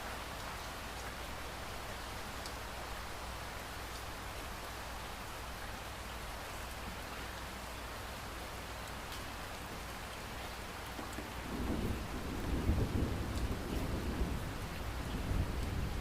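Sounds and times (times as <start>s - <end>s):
steady rain falling: 0.0s - 16.0s
low rumble of thunder: 11.2s - 16.0s.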